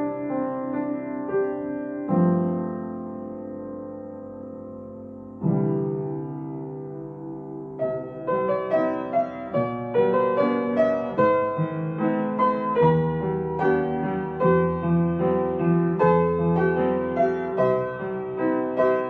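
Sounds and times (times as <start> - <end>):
solo piano music: 0.0 - 19.0.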